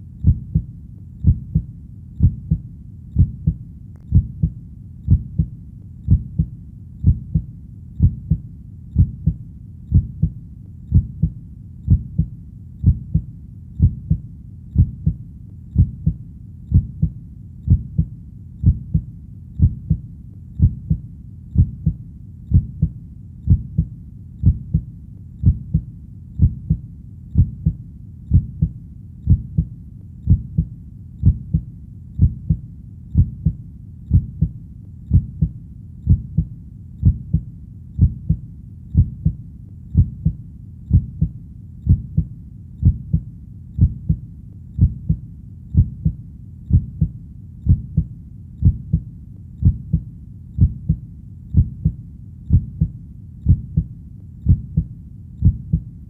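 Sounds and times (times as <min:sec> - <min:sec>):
heartbeat thumps: 0:00.0 - 0:56.0.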